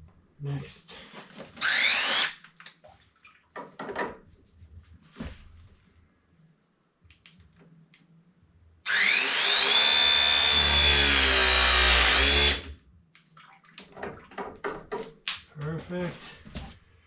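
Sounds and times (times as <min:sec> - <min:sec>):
press tool motor whine: 0:01.6 - 0:02.3, 0:08.9 - 0:12.7.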